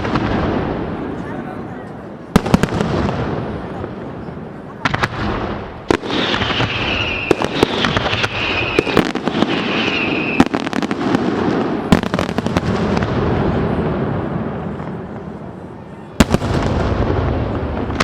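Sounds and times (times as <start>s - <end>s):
fireworks bangs and crackling: 0.0s - 18.0s
high falling whistle: 6.2s - 9.0s, 9.6s - 10.5s.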